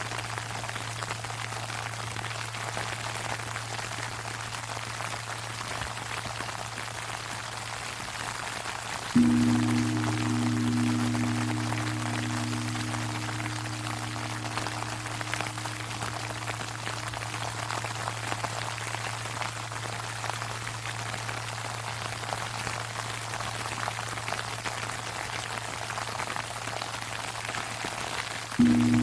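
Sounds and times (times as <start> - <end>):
temple bell humming: 9.2 - 20.0, 28.6 - 29.0.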